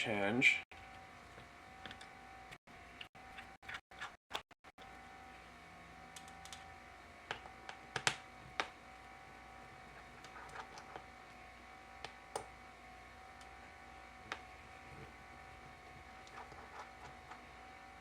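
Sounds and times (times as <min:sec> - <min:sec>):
faint steady hum: 0:04.8 - 0:18.0.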